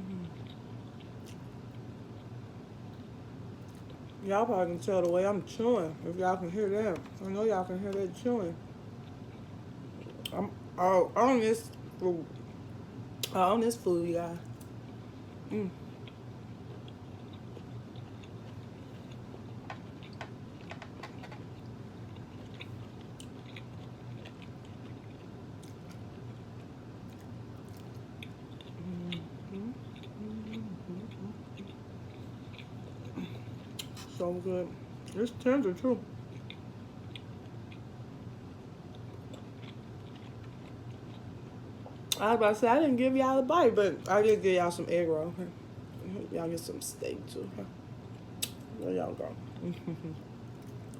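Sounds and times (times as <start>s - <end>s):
low steady hum: 0.0s - 50.9s
chewing food: 0.1s - 4.2s, 14.4s - 34.2s, 36.2s - 37.9s, 38.8s - 42.2s.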